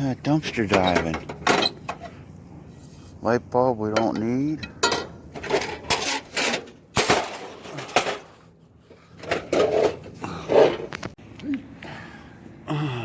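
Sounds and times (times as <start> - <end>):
junk scraping and knocking: 4.0 - 11.1.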